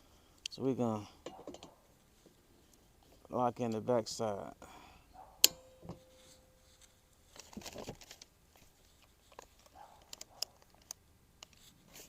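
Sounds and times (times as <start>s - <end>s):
handling rustle: 5.2s - 12.0s
pliers clicking on metal: 5.4s - 5.7s.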